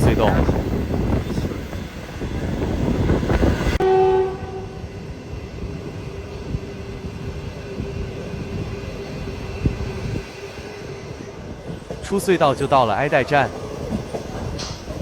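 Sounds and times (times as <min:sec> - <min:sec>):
train rushing: 0:00.0 - 0:15.0
train horn blast: 0:03.7 - 0:04.9.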